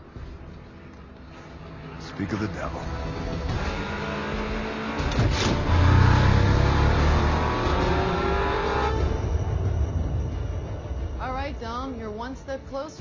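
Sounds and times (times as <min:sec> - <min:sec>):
car engine revving: 0:02.6 - 0:10.0.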